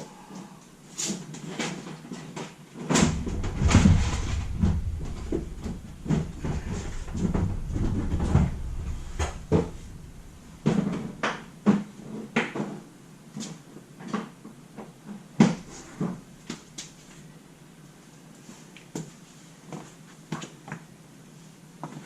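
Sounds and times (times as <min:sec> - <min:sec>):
low rumble: 0:03.0 - 0:11.8.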